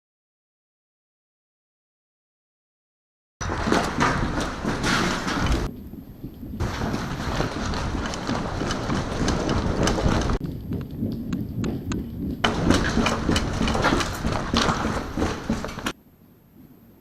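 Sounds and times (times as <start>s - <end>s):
sharp clicks and knocks: 3.4s - 16.0s
rustling noise: 3.4s - 17.0s.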